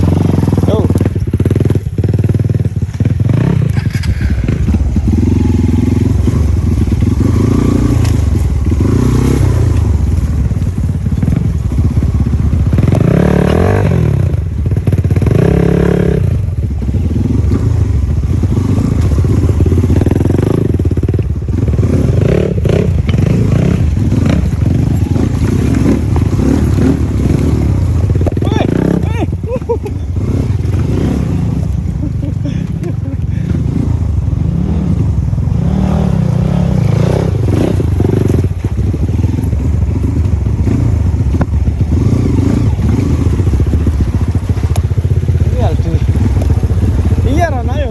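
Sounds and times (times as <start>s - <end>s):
motorcycle engine running: 0.0s - 47.9s.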